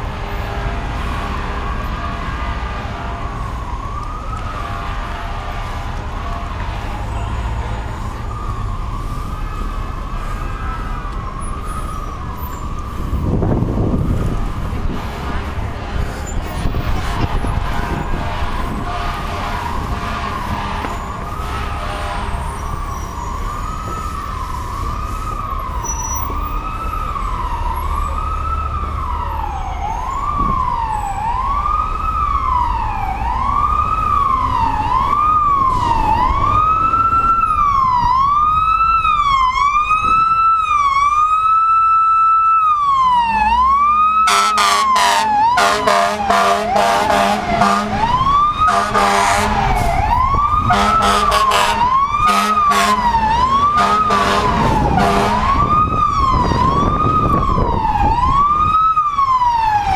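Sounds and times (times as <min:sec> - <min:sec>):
fire truck siren: 0:00.0 - 0:59.9
deep air horn blasts: 0:04.4 - 0:07.9, 0:14.9 - 0:22.9, 0:43.9 - 0:55.8.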